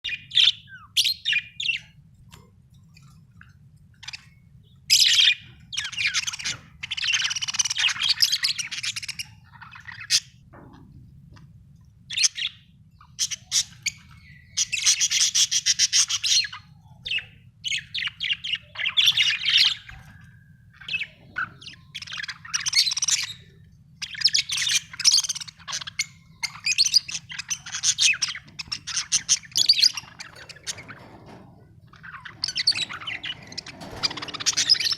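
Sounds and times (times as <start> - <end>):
budgerigar chirping and warbling: 20.8 - 34.9.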